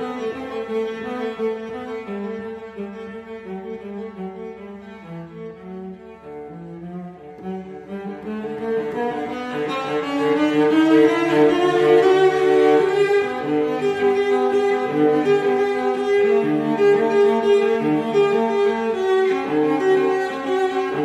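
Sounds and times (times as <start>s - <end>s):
instrumental music with held notes: 0.0s - 21.0s.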